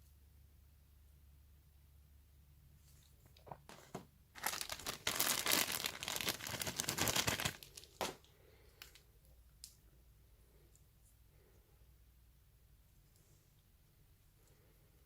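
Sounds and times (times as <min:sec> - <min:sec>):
packaging crinkling: 0:03.3 - 0:09.0.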